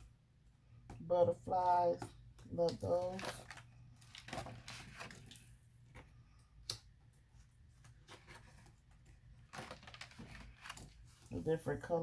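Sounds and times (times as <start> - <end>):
paper pages rustling: 7.6 - 11.5.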